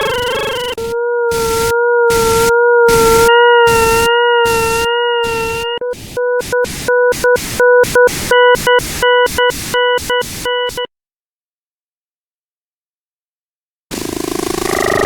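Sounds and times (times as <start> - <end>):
buzzy synthesized tone: 0.0 - 10.8.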